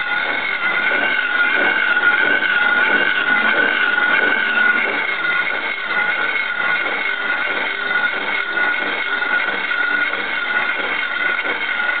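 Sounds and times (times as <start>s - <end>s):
milling saw whining: 0.0s - 12.0s
saw cutting steel: 0.0s - 12.0s.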